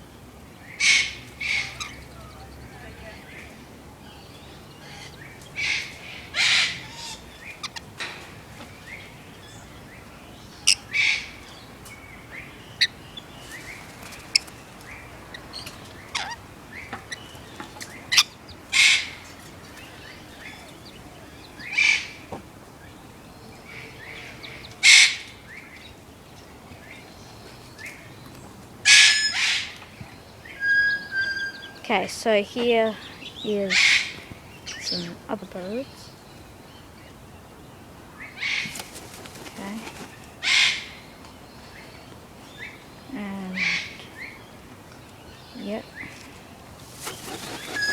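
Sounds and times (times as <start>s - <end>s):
lorikeets screeching: 0.6s - 8.0s, 8.8s - 11.7s, 15.3s - 22.2s, 32.8s - 37.2s, 47.0s - 47.9s.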